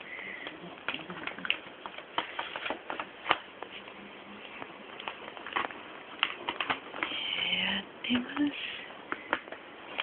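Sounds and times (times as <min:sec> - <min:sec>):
paper bag crackling and rustling: 0:00.0 - 0:07.4.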